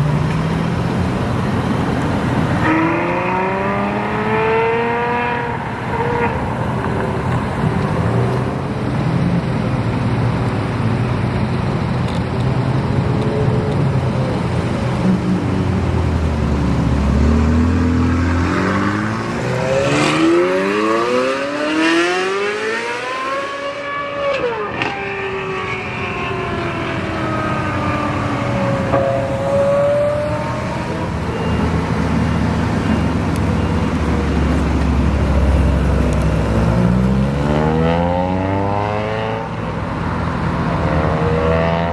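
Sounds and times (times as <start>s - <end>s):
car engine revving: 0.0s - 6.5s, 15.1s - 41.9s
sports car engine accelerating: 0.0s - 8.7s, 13.2s - 41.9s.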